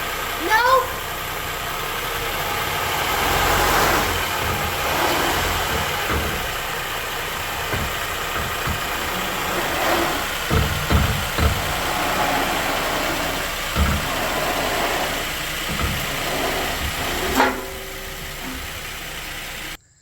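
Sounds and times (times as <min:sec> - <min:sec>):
car engine idling: 0:00.0 - 0:19.8.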